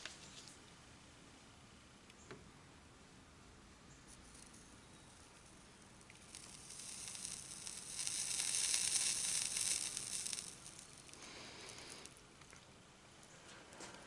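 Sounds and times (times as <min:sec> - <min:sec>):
solder flux sizzling and crackling: 0:04.0 - 0:14.0.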